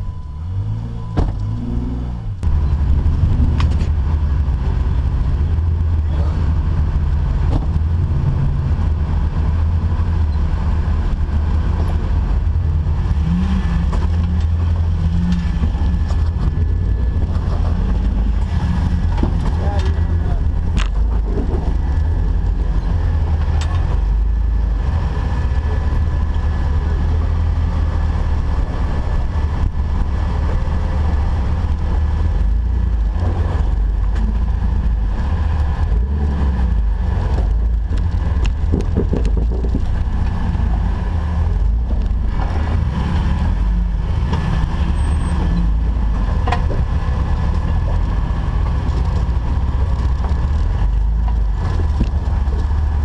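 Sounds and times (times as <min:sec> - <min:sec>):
vehicle engine low rumble: 0:00.0 - 0:53.0
sharp clicks and knocks: 0:03.3 - 0:04.0, 0:13.9 - 0:22.0, 0:37.3 - 0:40.9, 0:45.5 - 0:53.0.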